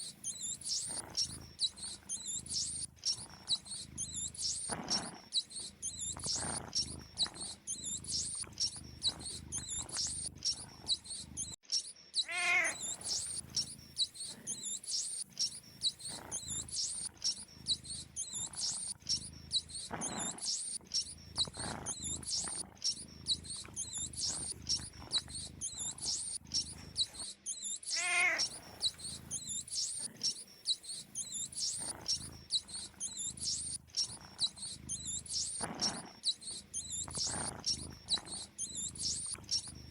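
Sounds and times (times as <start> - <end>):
high-pitched mouse squeaks: 0.0 - 39.9.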